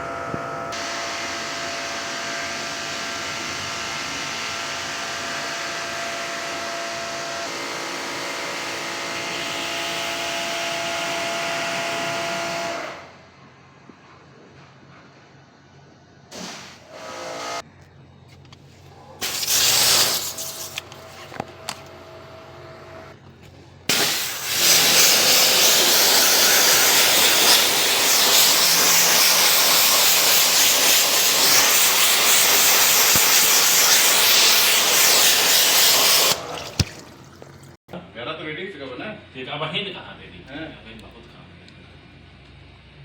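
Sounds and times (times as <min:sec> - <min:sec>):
pressurised jet hissing: 0:19.2 - 0:20.9, 0:23.9 - 0:37.5.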